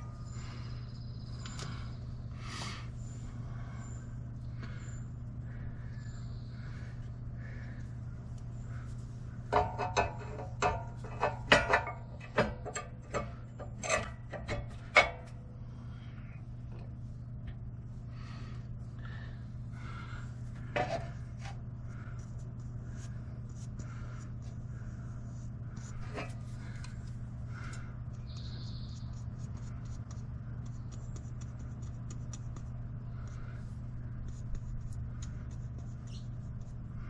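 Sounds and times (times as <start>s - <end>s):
steady low hum: 0.0s - 37.0s
tool clicks and scrapes on metal: 9.5s - 15.4s.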